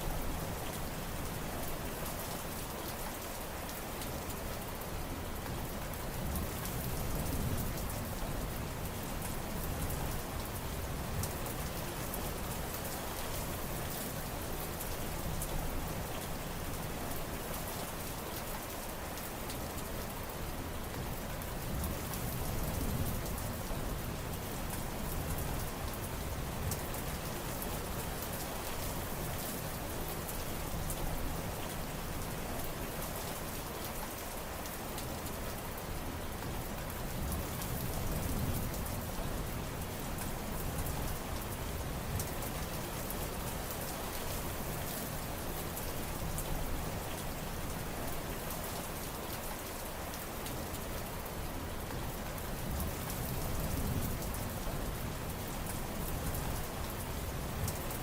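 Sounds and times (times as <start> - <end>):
patter of raindrops: 0.0 - 58.0.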